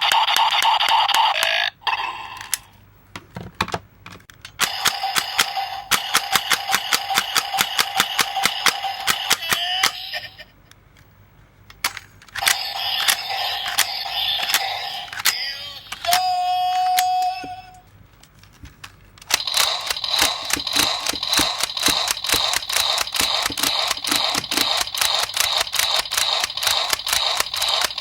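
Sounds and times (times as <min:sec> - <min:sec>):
fast electronic clicking: 0:04.6 - 0:09.5, 0:19.2 - 0:28.0.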